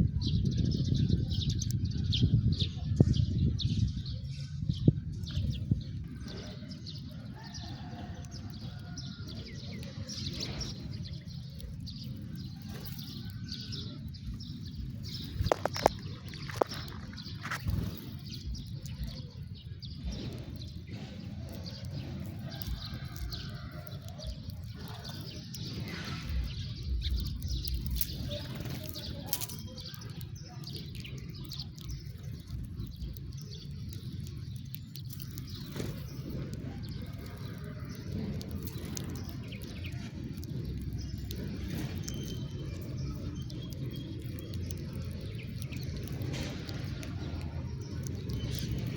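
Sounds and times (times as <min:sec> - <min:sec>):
low background rumble: 0:00.0 - 0:48.9
sparrows chirping: 0:00.0 - 0:48.9.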